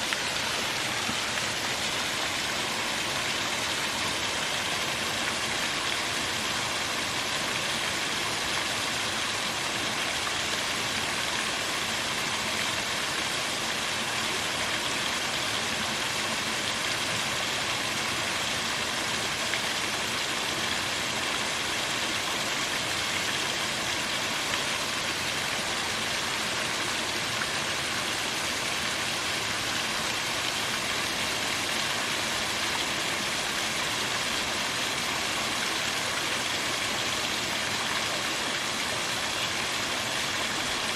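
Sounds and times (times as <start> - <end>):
water splashing over rocks: 0.0 - 12.1.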